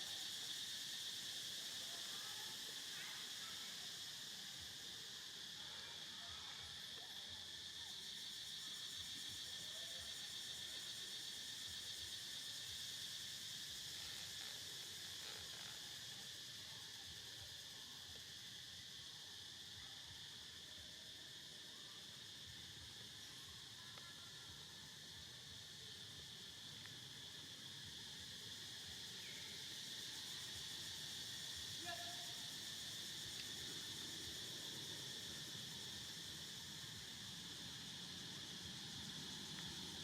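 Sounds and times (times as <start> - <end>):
insects trilling: 0.0 - 40.0.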